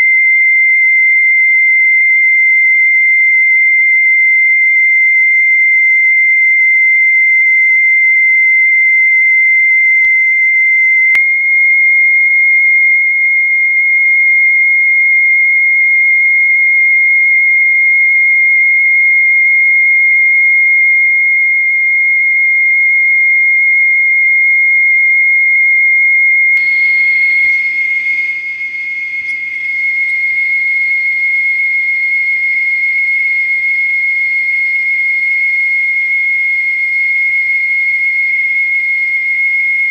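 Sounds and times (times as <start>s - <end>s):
high-pitched test tone: 26.6s - 39.9s.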